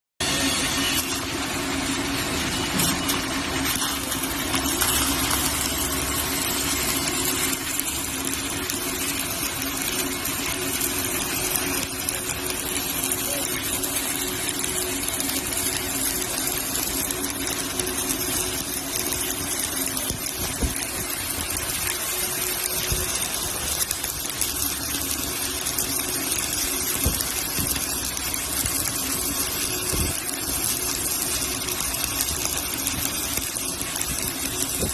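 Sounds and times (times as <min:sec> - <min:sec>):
welding arc crackling hiss: 0:00.2 - 0:34.9.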